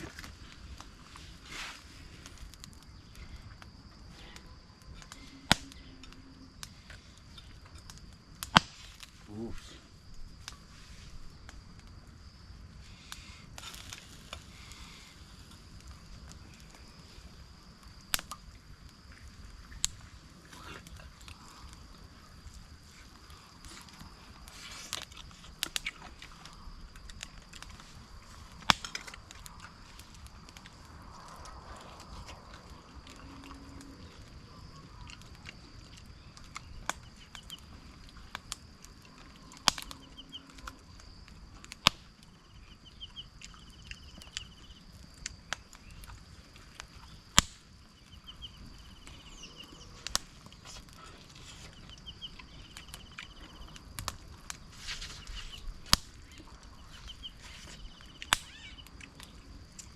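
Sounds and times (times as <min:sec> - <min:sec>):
rapid chirping trills: 0:39.8 - 0:40.6, 0:42.4 - 0:44.8, 0:47.9 - 0:53.8, 0:55.1 - 0:58.9.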